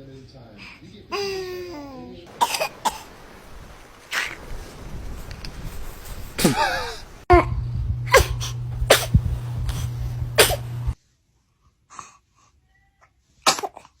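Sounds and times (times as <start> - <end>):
baby sneezing: 2.4 - 3.1, 6.4 - 7.1, 8.1 - 10.7, 13.4 - 14.0
steady low hum: 4.7 - 11.0.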